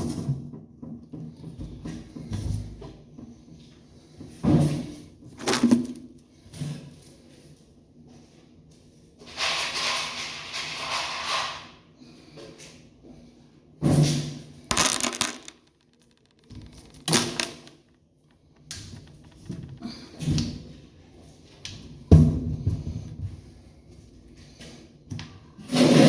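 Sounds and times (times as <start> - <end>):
sharp knocks and rattles: 14.7 - 20.0.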